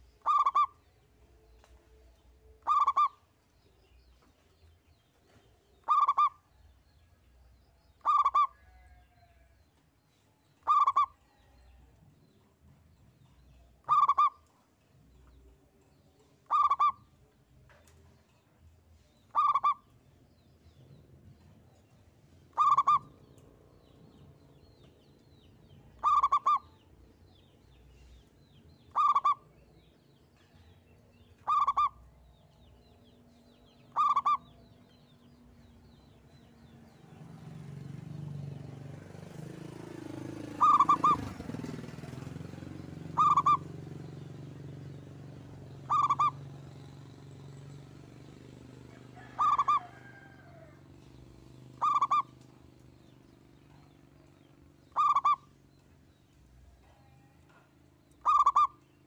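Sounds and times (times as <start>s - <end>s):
dove cooing: 0.2s - 0.8s, 2.6s - 3.2s, 5.8s - 6.4s, 8.0s - 8.8s, 10.6s - 11.2s, 13.8s - 14.4s, 16.4s - 17.0s, 19.3s - 19.8s, 22.5s - 23.2s, 26.0s - 26.7s, 28.9s - 29.5s, 31.4s - 32.0s, 33.9s - 34.5s, 39.8s - 43.7s, 45.8s - 46.5s, 49.0s - 50.8s, 51.8s - 52.4s, 54.9s - 55.5s, 58.2s - 58.8s.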